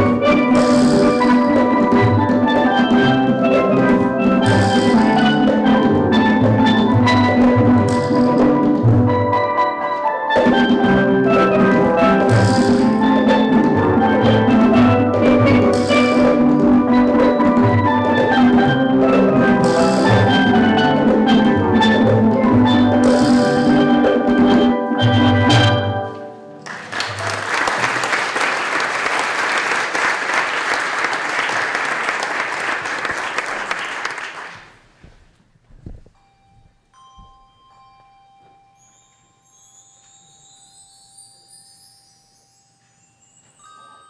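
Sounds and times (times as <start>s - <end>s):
steel drum band playing: 0.0s - 28.4s
audience applauding: 26.6s - 34.8s.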